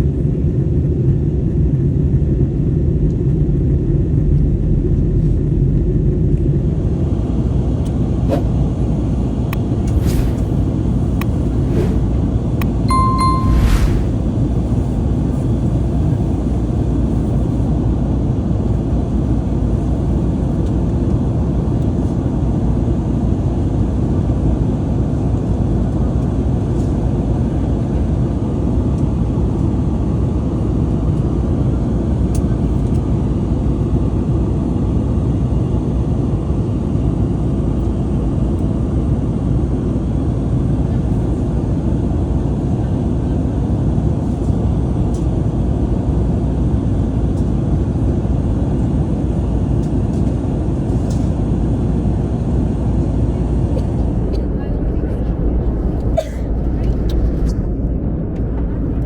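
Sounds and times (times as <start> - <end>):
airliner cabin rumble: 4.4 - 22.6, 47.3 - 59.0.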